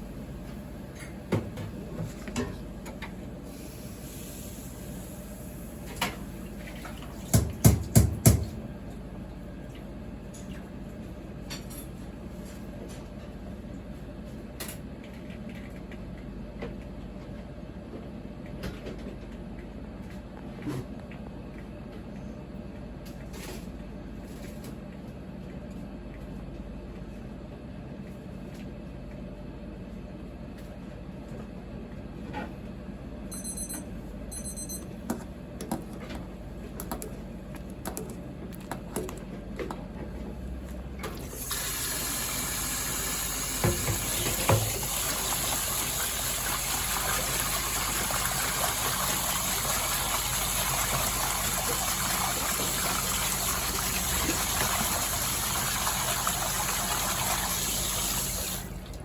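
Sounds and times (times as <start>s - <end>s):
kitchen hum: 0.0s - 10.8s, 33.3s - 59.0s.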